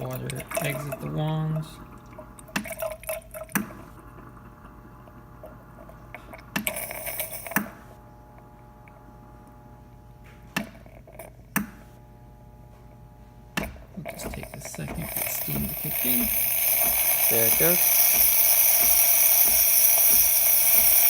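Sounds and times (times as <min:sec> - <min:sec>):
espresso machine hum: 0:00.0 - 0:21.0
steam wand sputtering and hissing: 0:14.0 - 0:21.0.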